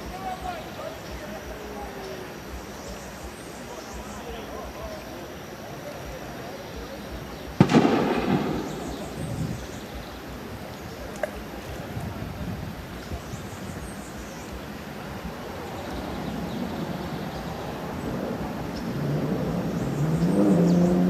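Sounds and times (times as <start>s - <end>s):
outdoor rumble: 7.1s - 13.3s
wind noise on microphone: 7.1s - 21.0s.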